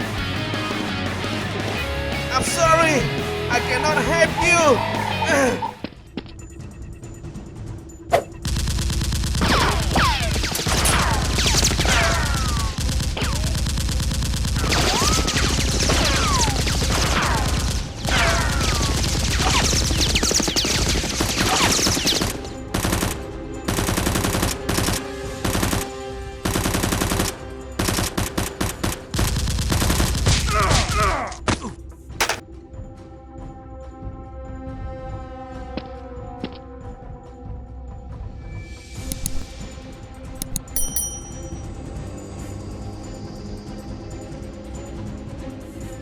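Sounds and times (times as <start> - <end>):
rapid automatic gunfire: 8.4 - 30.5.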